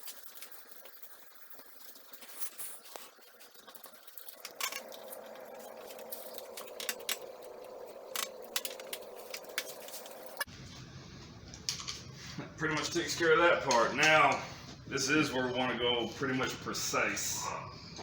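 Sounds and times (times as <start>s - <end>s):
roller clicks and scrapes: 0.0s - 10.8s.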